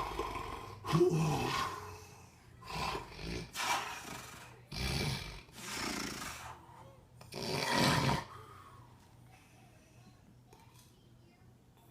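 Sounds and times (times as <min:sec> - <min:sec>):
person snoring: 0:00.0 - 0:06.6, 0:07.3 - 0:08.4.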